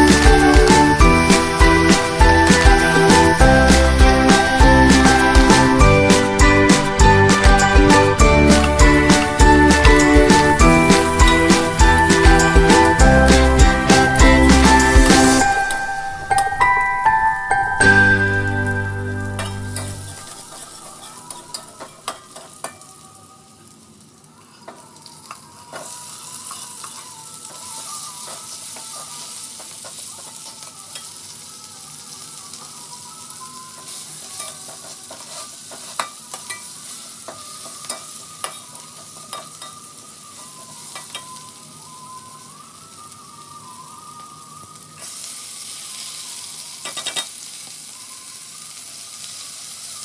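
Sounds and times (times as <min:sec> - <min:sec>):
background music: 0:00.0 - 0:21.0
food sizzling in a pan: 0:00.0 - 0:50.0.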